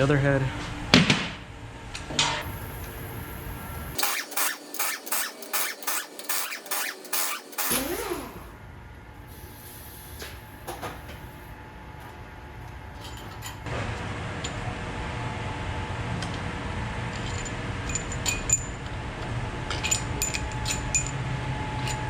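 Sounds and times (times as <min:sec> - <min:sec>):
ratchet wrench clicking: 0:04.0 - 0:08.5.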